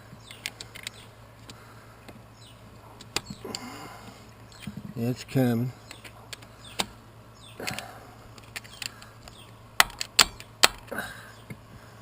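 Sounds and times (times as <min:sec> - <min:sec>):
screwdriver metallic clicks and knocks: 0:09.8 - 0:10.9.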